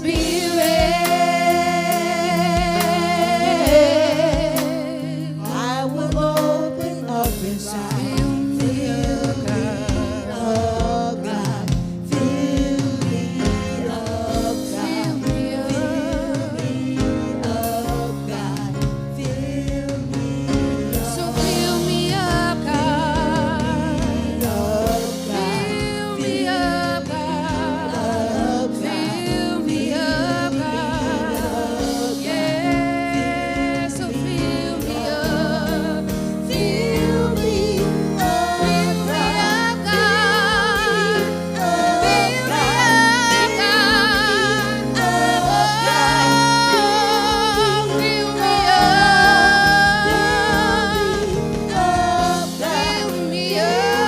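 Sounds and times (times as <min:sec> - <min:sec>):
choir singing gospel music: 0:00.0 - 0:54.0
sustained accompanying chords: 0:00.0 - 0:54.0
steady beat: 0:28.4 - 0:54.0.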